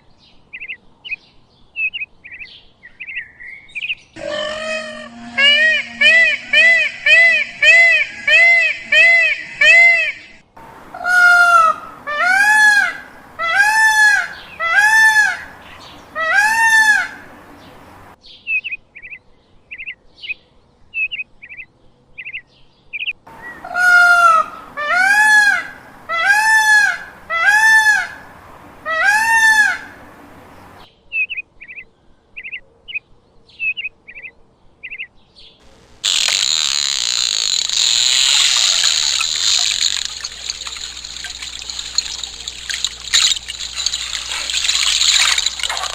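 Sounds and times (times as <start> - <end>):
birds calling: 10.6 - 18.1, 35.6 - 45.9
high bird chirps: 35.8 - 45.9.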